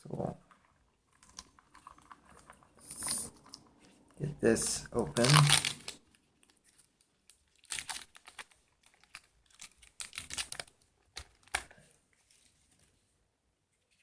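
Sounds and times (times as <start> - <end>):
food packaging crinkling and tearing: 5.0 - 12.6.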